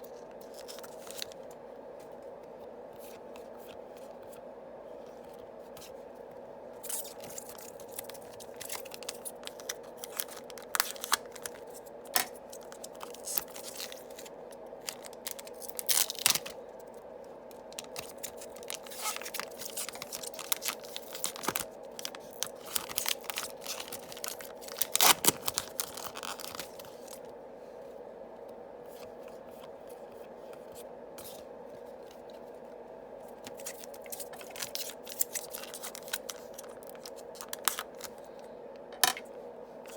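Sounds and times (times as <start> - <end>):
faint steady hum: 0.0 - 39.9
foil wrappers tearing and crinkling: 0.4 - 1.4, 6.8 - 16.6, 17.6 - 27.2, 33.5 - 38.2
cards being handled: 33.3 - 38.2.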